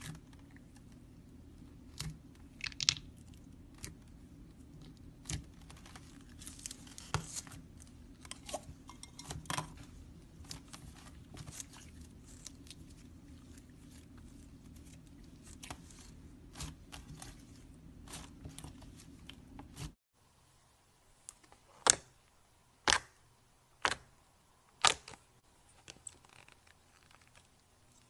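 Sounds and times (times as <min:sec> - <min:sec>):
slime clicking and popping: 0:02.6 - 0:03.1.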